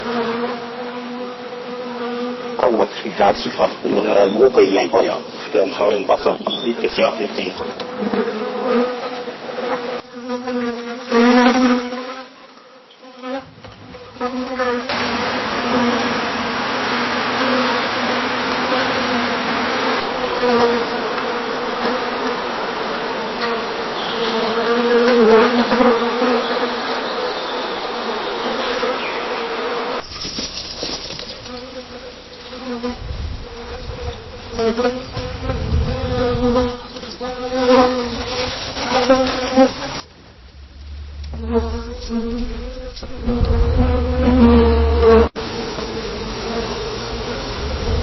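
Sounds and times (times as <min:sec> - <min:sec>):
bee buzzing: 0:00.0 - 0:40.0, 0:41.1 - 0:48.0
low rumble: 0:40.3 - 0:45.0.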